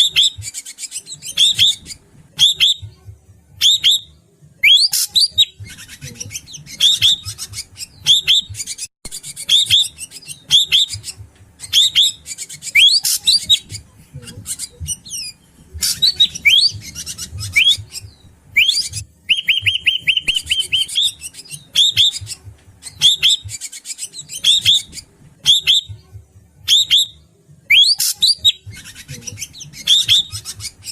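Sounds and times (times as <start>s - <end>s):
bird calling with whistled notes: 18.6s - 22.2s.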